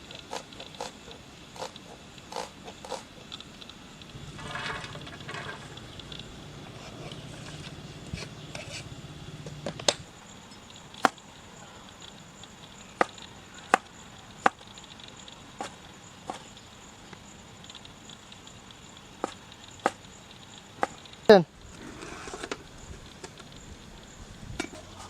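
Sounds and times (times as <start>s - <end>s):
low steady hum: 3.5s - 11.0s.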